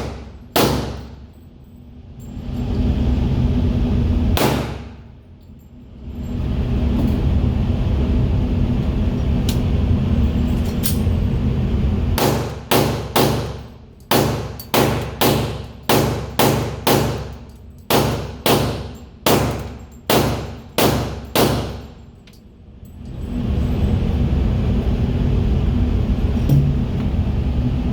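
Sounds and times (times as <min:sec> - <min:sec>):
pistol shots: 0:00.0 - 0:01.1, 0:04.4 - 0:05.0, 0:12.2 - 0:17.3, 0:17.9 - 0:21.8
steady low rumble: 0:00.0 - 0:27.9.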